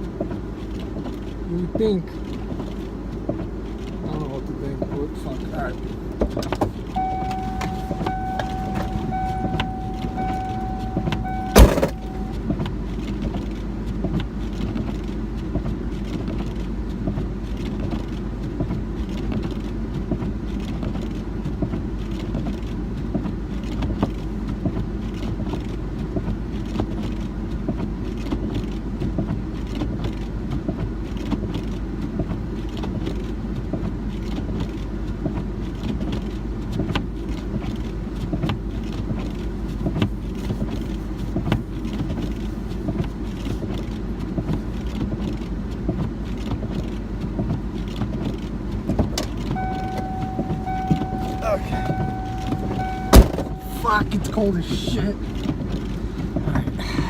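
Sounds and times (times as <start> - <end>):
car engine idling: 1.8 - 12.6, 38.6 - 44.8, 49.1 - 57.0
car door slamming: 6.2 - 12.4, 49.2 - 53.8
door-open warning tone: 6.9 - 12.4, 49.6 - 54.3.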